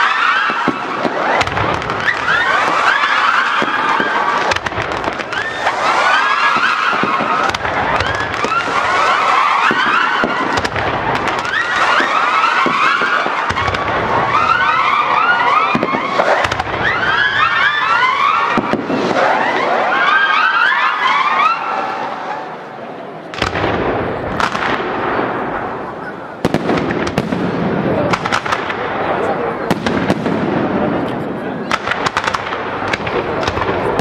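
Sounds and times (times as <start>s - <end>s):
firework bangs: 0.0s - 34.0s
whistling fireworks: 0.0s - 34.0s.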